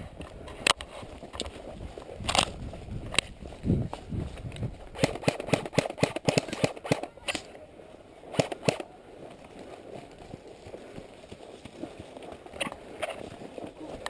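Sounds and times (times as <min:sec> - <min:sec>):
airsoft gun shots: 0:05.0 - 0:07.5, 0:08.3 - 0:08.9.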